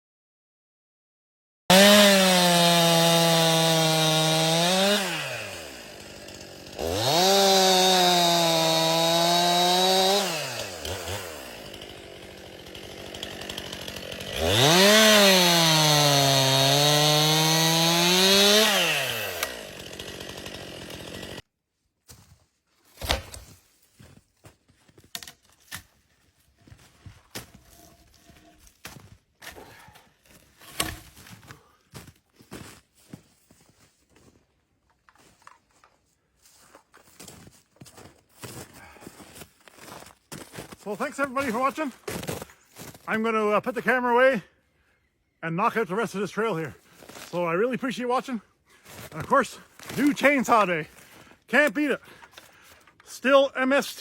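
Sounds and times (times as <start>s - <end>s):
chainsaw revving and idling: 1.7s - 21.4s, 40.8s - 44.0s, 46.1s - 54.0s.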